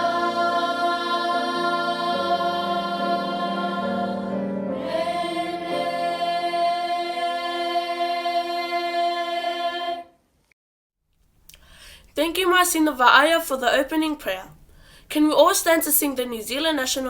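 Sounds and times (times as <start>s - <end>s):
choir singing a hymn: 0.0s - 10.2s.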